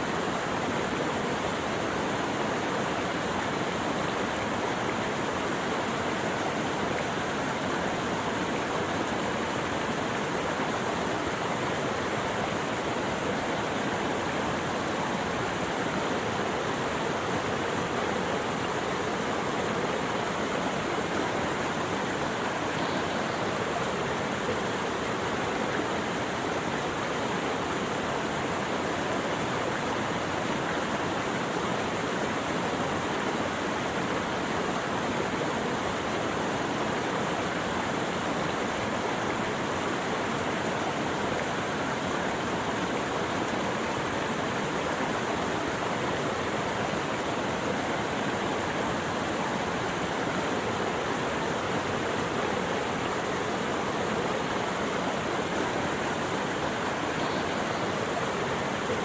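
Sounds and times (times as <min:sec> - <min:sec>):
rushing water: 0:00.0 - 0:59.0.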